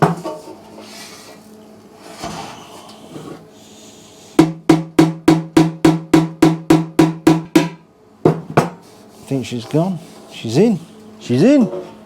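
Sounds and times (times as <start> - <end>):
hammer tapping on hollow steel tank: 4.4 - 8.8.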